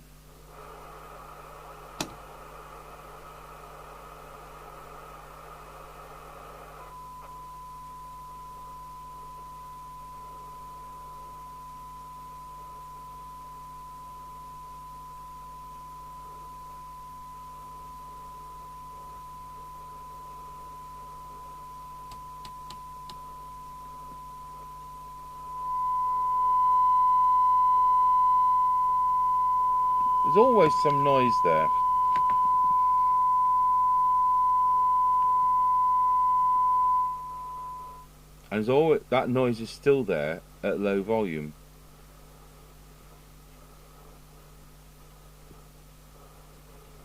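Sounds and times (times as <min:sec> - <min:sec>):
radio receiver hiss: 0:00.0 - 0:07.6, 0:30.0 - 0:33.0, 0:38.4 - 0:47.0
faint steady hum: 0:00.0 - 0:47.0
steady test tone from radio: 0:00.0 - 0:47.0.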